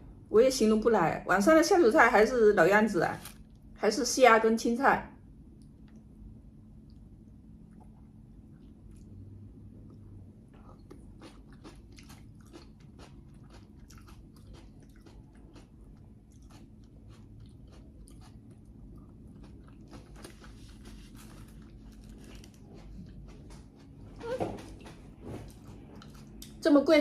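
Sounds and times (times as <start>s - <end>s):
faint low hum: 0.0s - 27.0s
person chewing food: 5.5s - 24.1s, 25.4s - 26.6s.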